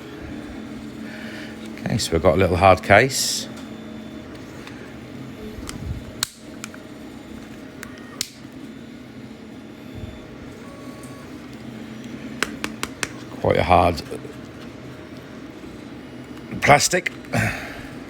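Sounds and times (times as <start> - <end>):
steady background hum: 0.0 - 18.0
plastic case clicks and taps: 12.4 - 13.1.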